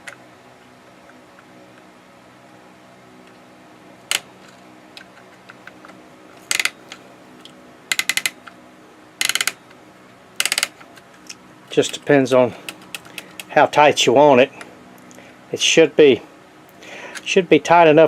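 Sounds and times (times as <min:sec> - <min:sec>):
typewriter winding ratchet clicks: 0:06.4 - 0:07.0, 0:07.9 - 0:08.5, 0:09.2 - 0:09.6, 0:10.4 - 0:11.0, 0:11.7 - 0:13.5.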